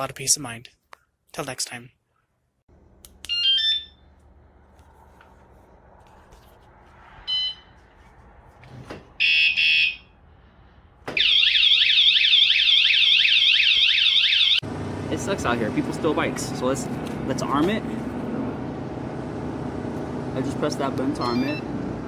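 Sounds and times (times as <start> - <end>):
warbling alarm siren: 3.3 - 4.0, 7.3 - 7.7, 9.2 - 10.1, 11.1 - 14.7
alarm beep: 7.3 - 7.6, 21.2 - 21.7
harsh alarm blasts: 7.3 - 7.7, 9.2 - 10.2, 11.1 - 15.5.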